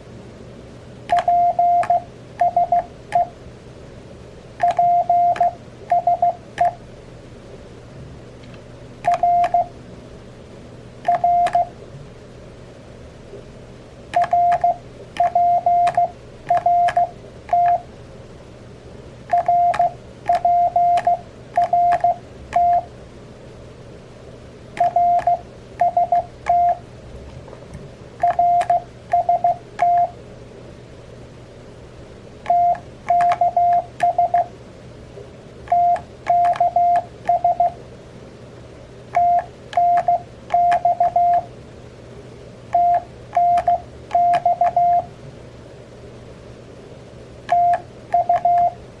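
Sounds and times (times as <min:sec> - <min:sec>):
morse code sidetone: 0:01.1 - 0:03.3, 0:04.6 - 0:06.8, 0:09.1 - 0:09.7, 0:11.1 - 0:11.7, 0:14.2 - 0:17.9, 0:19.3 - 0:22.9, 0:24.8 - 0:26.8, 0:28.2 - 0:30.2, 0:32.5 - 0:34.5, 0:35.7 - 0:37.8, 0:39.2 - 0:41.5, 0:42.8 - 0:45.1, 0:47.5 - 0:48.8.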